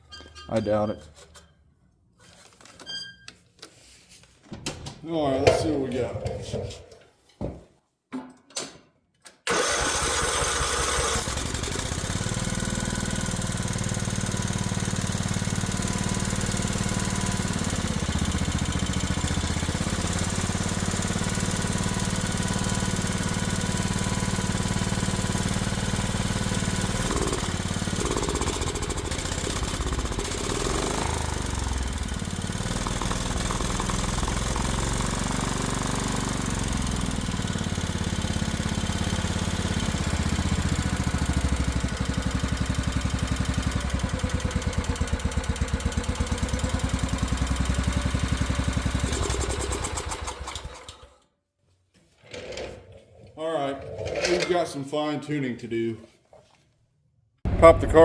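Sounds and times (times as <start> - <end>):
riding mower engine starting: 9.4 - 51.2, 52.2 - 54.9.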